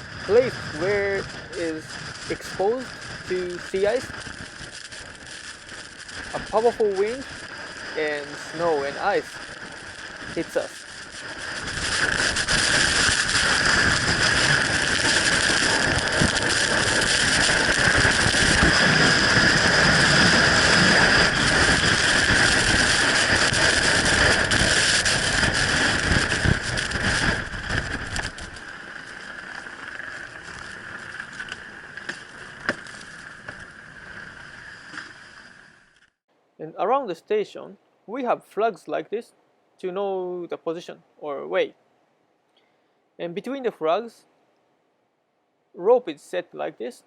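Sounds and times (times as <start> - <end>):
wind blowing over microphone: 0.0 - 31.9
snow and ice crackling: 0.0 - 36.1.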